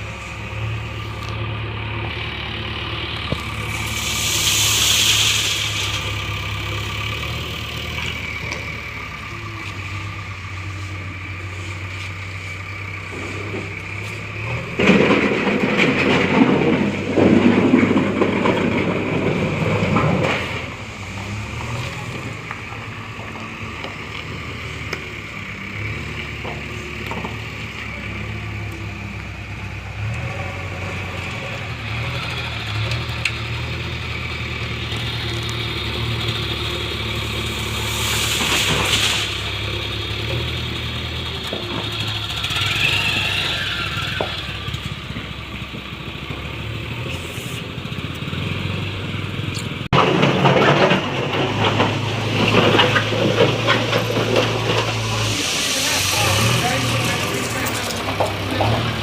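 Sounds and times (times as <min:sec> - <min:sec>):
diesel engine running: 0:00.0 - 0:59.0
ballast stones pouring: 0:03.7 - 0:06.2.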